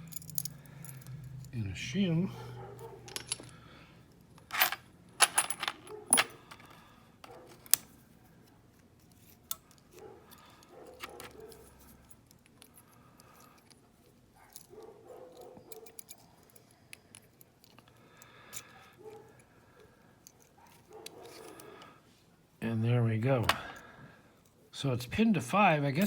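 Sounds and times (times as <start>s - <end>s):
handling noise: 2.6s - 3.5s, 4.4s - 7.8s
metal clicks in padlock: 7.5s - 8.0s.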